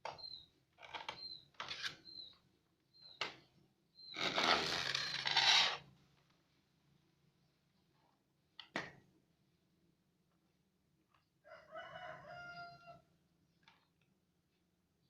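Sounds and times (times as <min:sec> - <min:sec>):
rooster crowing: 0:11.4 - 0:13.0.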